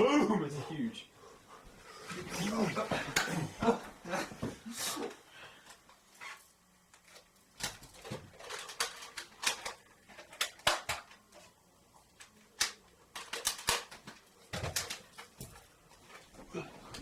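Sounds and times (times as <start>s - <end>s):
toy blasters clicking and firing: 8.3s - 11.2s, 12.6s - 15.0s.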